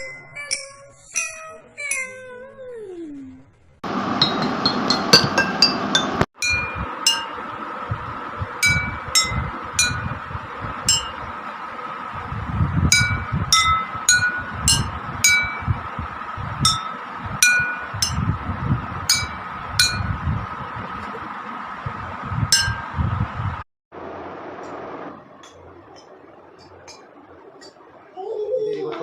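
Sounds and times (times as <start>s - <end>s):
water glasses ringing when struck: 4.2s - 7.4s, 8.6s - 10.1s, 10.9s - 11.2s, 12.9s - 15.7s, 16.6s - 18.3s, 19.1s - 20.1s, 22.6s - 22.9s.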